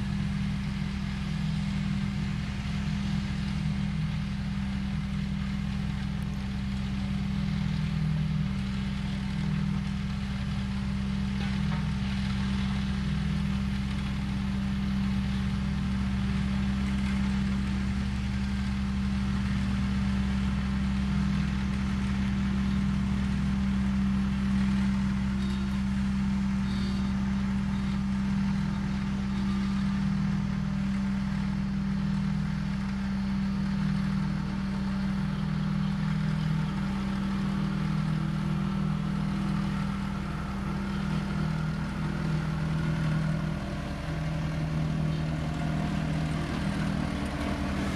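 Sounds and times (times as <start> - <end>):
heavy diesel engine running: 0.0 - 47.9.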